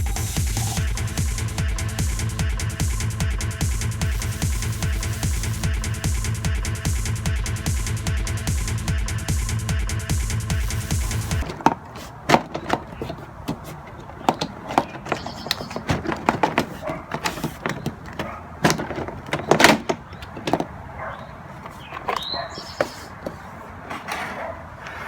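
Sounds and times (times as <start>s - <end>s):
plastic panel scraping: 10.7s - 20.8s, 21.5s - 25.0s
plastic trim clicks and knocks: 11.4s - 20.7s.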